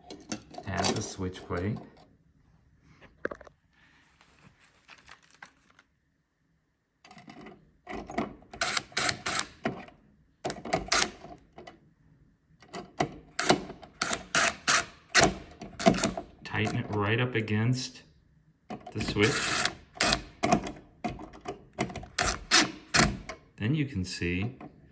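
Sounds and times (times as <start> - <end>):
screwdriver clicking and scraping: 7.1 - 9.9, 10.5 - 11.7, 12.6 - 17.0, 18.8 - 23.4.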